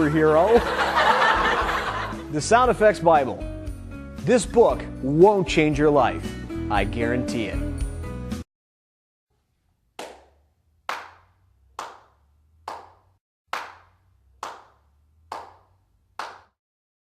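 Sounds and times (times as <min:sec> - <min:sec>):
single hand claps with echo: 0:10.0 - 0:16.6.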